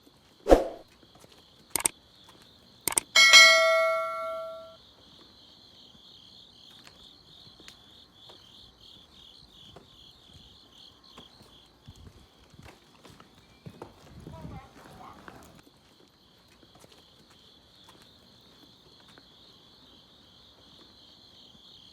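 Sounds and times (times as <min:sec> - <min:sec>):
crickets chirping: 0:00.0 - 0:21.9
short clicks: 0:02.9 - 0:04.6
struck metal bell ringing: 0:03.2 - 0:04.8.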